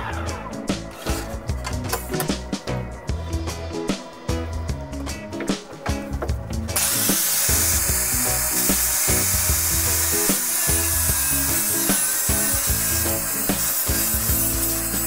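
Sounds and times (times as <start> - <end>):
background music: 0.0 - 15.0
power tool cutting wood: 6.7 - 15.0.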